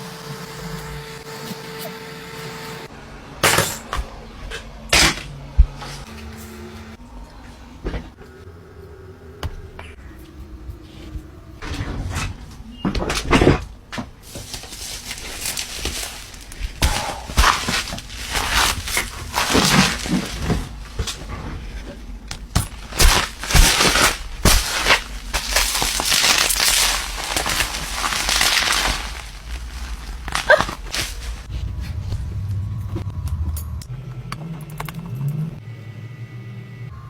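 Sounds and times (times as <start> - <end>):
crunching and scraping of tablet parts: 14.2 - 31.5.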